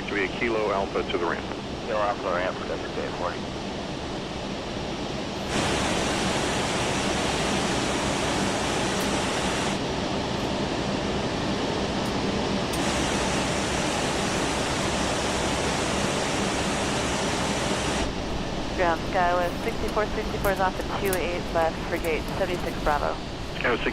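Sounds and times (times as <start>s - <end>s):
airliner cockpit rushing hiss: 12.8s - 18.1s.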